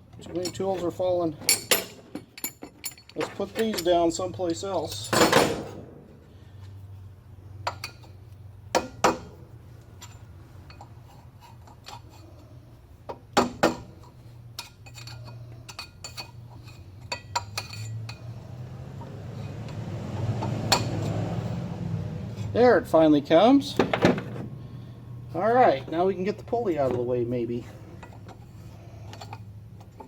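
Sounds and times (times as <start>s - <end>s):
metal hand tools clinking: 1.5s - 5.6s, 14.6s - 18.4s.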